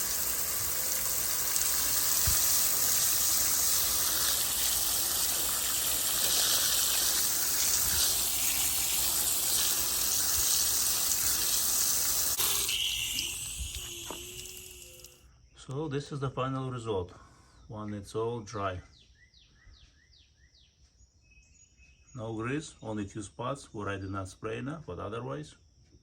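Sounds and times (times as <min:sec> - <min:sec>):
water spraying from hose: 0:00.0 - 0:15.2.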